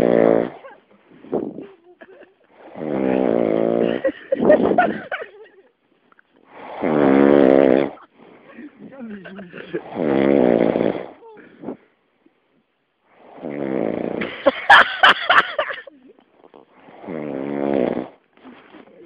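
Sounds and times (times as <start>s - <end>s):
man snoring: 0.0s - 0.6s, 2.5s - 4.9s, 6.5s - 8.0s, 9.0s - 11.8s, 13.2s - 14.4s, 16.8s - 18.2s.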